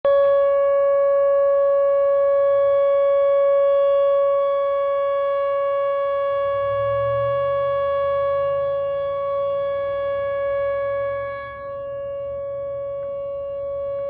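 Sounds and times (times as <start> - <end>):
warning siren steady tone: 0.0 - 14.0.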